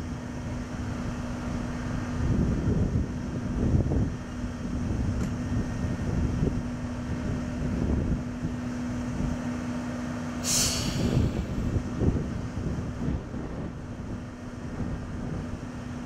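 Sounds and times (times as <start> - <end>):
air hiss: 10.4 - 11.7.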